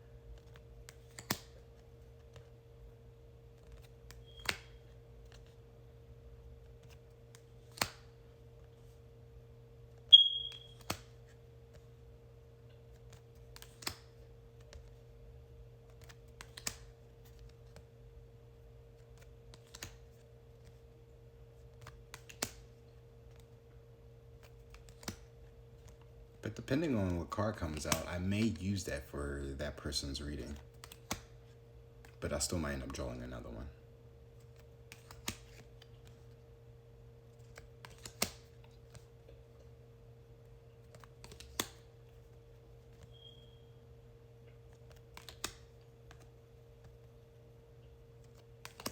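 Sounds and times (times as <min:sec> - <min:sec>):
faint steady hum: 0:00.0 - 0:48.9
cards snapping and tapping: 0:00.3 - 0:02.5, 0:03.6 - 0:05.6, 0:06.7 - 0:08.2, 0:10.4 - 0:11.8, 0:12.9 - 0:15.0, 0:15.9 - 0:17.8, 0:19.0 - 0:20.8, 0:21.6 - 0:23.5, 0:24.4 - 0:26.1, 0:30.6 - 0:31.4, 0:34.4 - 0:36.3, 0:37.3 - 0:39.1, 0:40.8 - 0:43.1, 0:44.7 - 0:47.1, 0:48.2 - 0:48.9.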